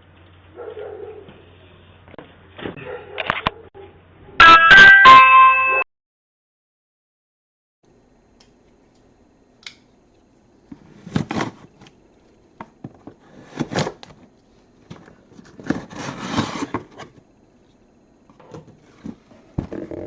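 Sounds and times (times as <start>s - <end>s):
scraping and rustling: 14.9s - 17.2s.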